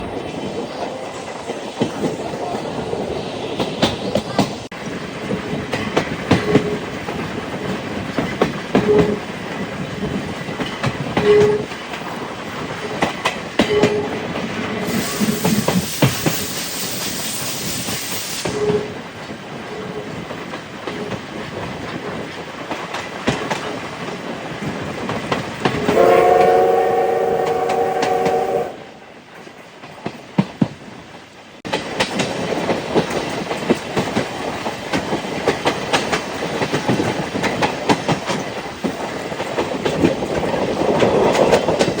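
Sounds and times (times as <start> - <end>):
train wheels rattling on rails: 0.0 - 42.0
train whistle chord: 25.8 - 29.0.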